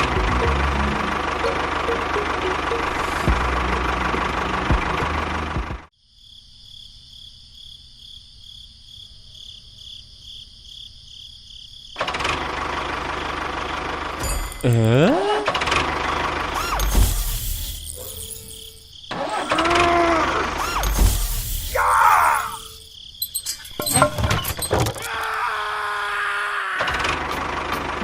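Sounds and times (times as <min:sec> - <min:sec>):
small motor running: 0:15.2 - 0:21.8.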